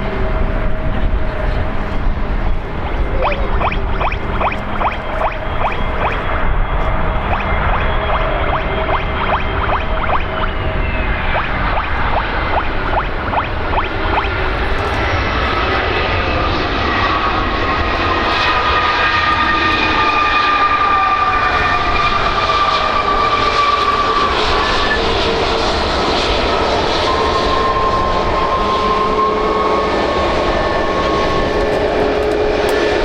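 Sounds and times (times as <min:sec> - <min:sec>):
jet engines running: 0:00.0 - 0:33.0
whining tones falling in pitch: 0:02.0 - 0:24.7.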